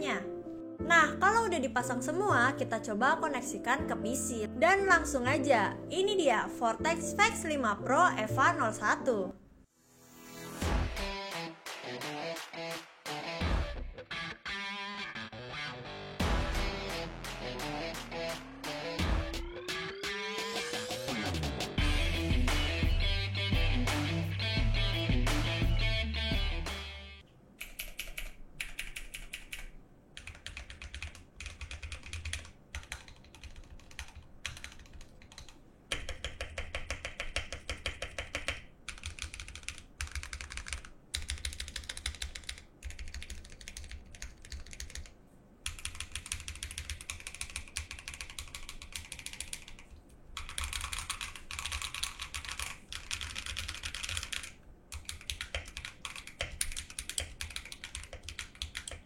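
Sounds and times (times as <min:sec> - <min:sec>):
mechanical keyboard typing: 0:27.6 - 0:59.0.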